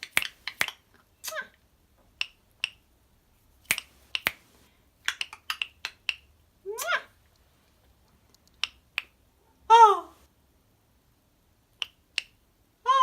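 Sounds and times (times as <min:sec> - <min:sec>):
lorikeet clicking: 0:00.0 - 0:01.4, 0:03.7 - 0:04.4, 0:05.0 - 0:06.9.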